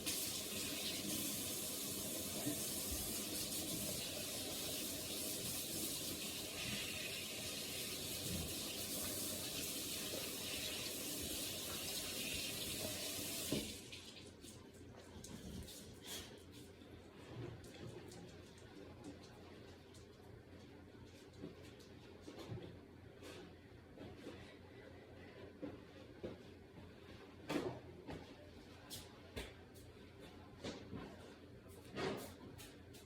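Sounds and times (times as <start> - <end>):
tap running into a sink: 8.0 - 14.0.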